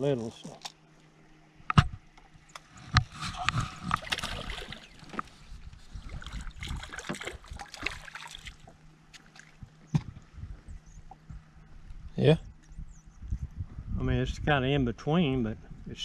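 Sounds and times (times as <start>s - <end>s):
water splashing and sloshing: 0.4s - 10.3s.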